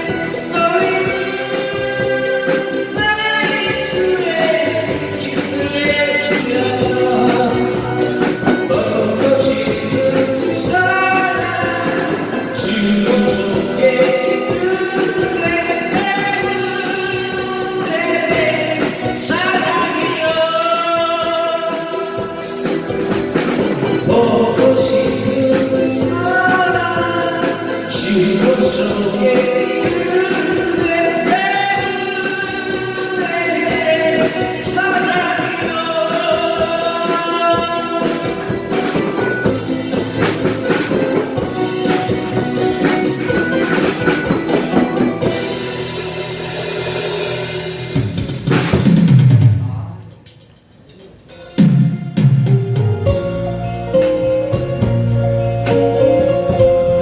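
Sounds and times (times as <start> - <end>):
person singing long notes: 0.0 - 23.0, 23.8 - 45.7
drums: 0.0 - 57.0
keyboard: 0.0 - 57.0.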